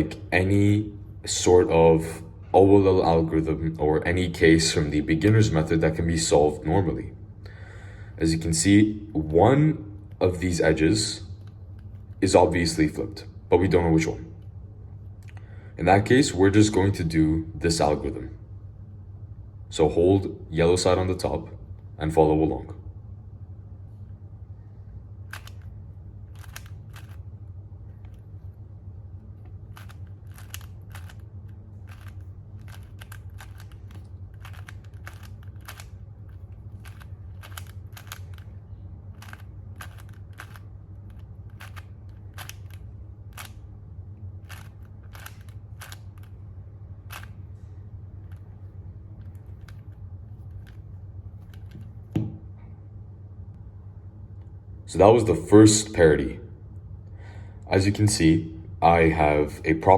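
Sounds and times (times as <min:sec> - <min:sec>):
low hum: 0:00.0 - 0:59.9
plastic cube clicks: 0:25.3 - 0:25.7, 0:26.3 - 0:27.2, 0:29.6 - 0:43.6, 0:44.4 - 0:46.4, 0:49.2 - 0:50.8, 0:51.4 - 0:52.1.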